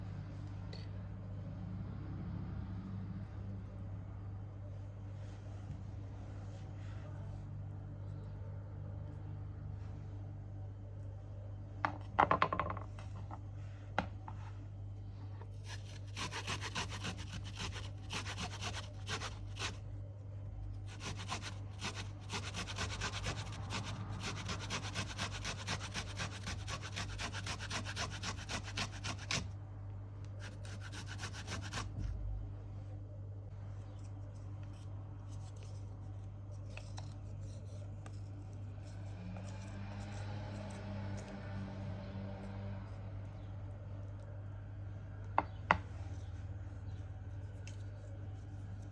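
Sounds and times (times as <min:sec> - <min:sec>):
low steady hum: 0:00.0 - 0:48.9
rapid scraping strokes: 0:15.6 - 0:19.8.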